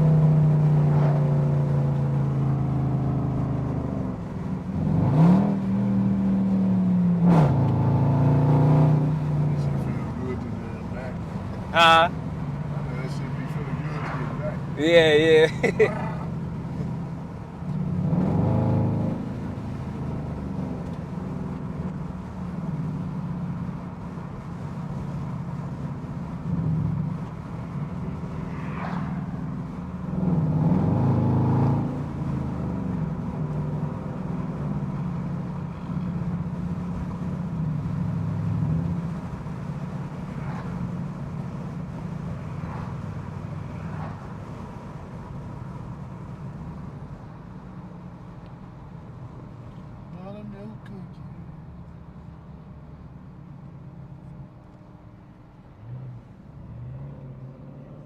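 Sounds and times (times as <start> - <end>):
car engine and exhaust: 0.0 - 58.0.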